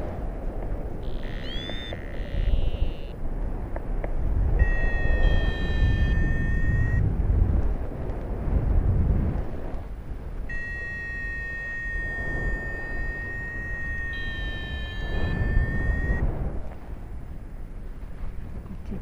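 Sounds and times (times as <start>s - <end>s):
wind buffeting microphone: 0.0s - 19.0s
high whistling tone: 1.0s - 3.1s, 4.6s - 7.0s, 10.5s - 16.3s.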